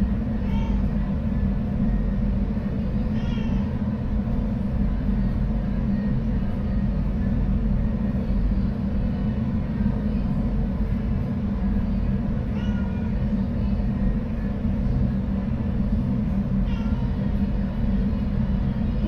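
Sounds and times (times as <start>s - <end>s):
steady low rumble: 0.0s - 19.0s
cat meowing: 3.2s - 3.7s.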